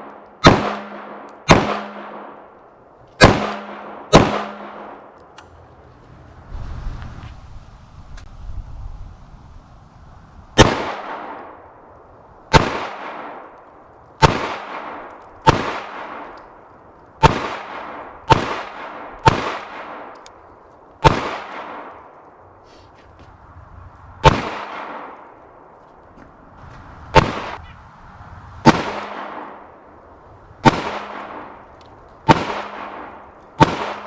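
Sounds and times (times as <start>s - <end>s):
pistol gunshots: 0.0s - 2.5s, 3.2s - 5.2s, 10.6s - 11.6s, 12.5s - 13.6s, 14.2s - 16.4s, 17.2s - 20.1s, 21.0s - 22.1s, 24.2s - 25.4s, 27.1s - 27.6s, 28.6s - 29.7s, 30.6s - 31.6s, 32.2s - 34.0s.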